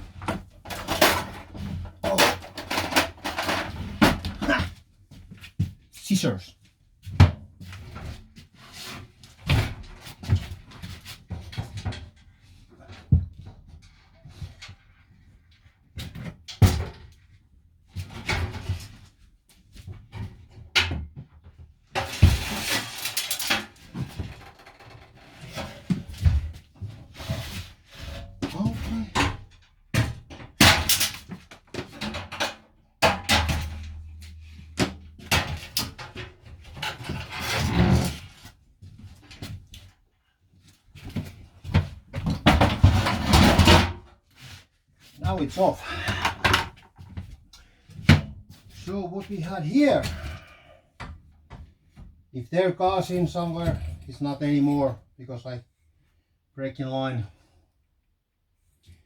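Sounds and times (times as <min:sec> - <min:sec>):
tools knocking and clattering: 0:00.2 - 0:04.6, 0:28.4 - 0:37.7.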